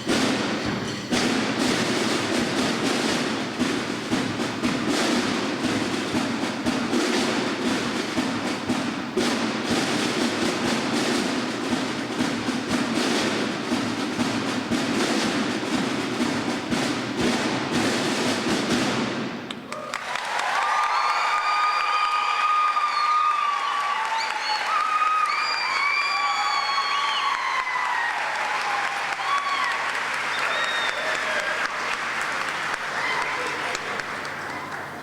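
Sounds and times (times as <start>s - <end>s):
anvil strikes: 0.0s - 1.8s.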